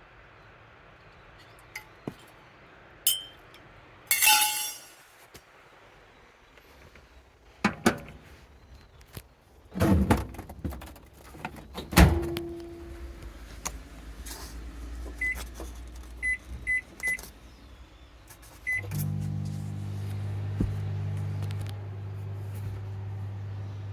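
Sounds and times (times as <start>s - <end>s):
microwave humming: 11.7s - 13.5s, 18.7s - 23.9s
microwave button beeps: 18.7s - 19.1s.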